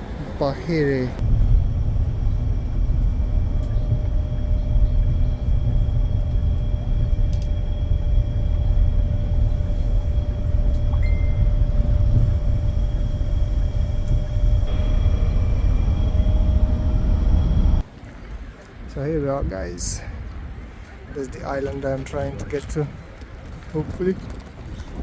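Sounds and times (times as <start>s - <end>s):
faint whine: 0.0s - 17.9s
bus engine and road rumble: 0.0s - 25.0s.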